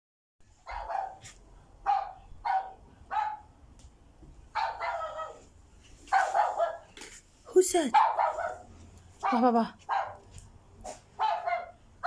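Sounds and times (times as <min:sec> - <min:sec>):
dog barking: 0:00.6 - 0:03.5, 0:04.5 - 0:05.5, 0:06.1 - 0:06.9, 0:07.9 - 0:10.3, 0:11.2 - 0:11.8.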